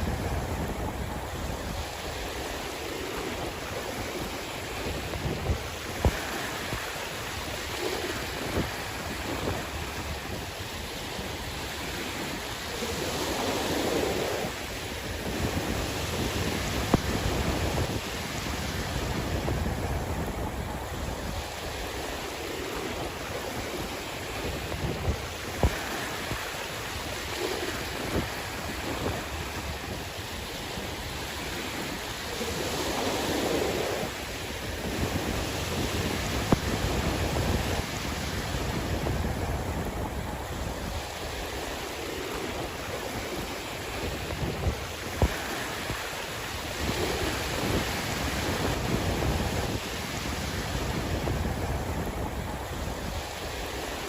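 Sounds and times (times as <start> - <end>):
sea waves washing: 0.0 - 54.0
wind buffeting microphone: 0.0 - 54.0.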